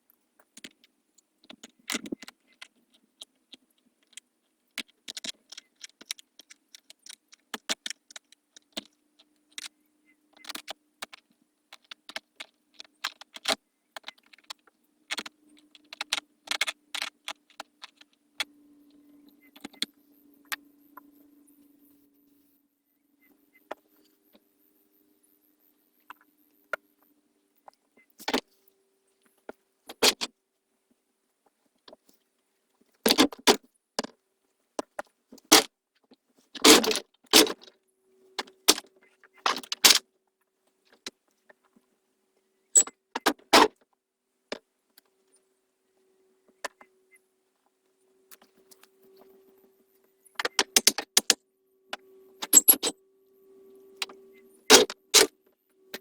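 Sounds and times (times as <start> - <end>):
sharp metallic clinks and knocks: 52.4 - 53.0.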